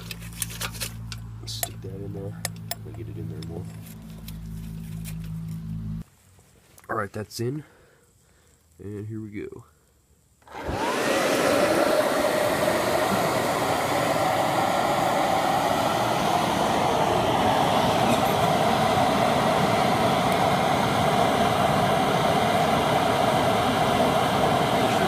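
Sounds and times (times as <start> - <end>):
hair dryer blower roaring: 10.4 - 25.0
forced-draught fire roaring: 10.5 - 25.0.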